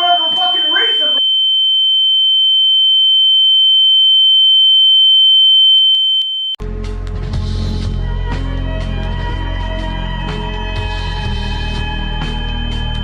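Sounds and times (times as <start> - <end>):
high-pitched ringing tone: 0.0 - 6.6
dark music: 6.6 - 13.0.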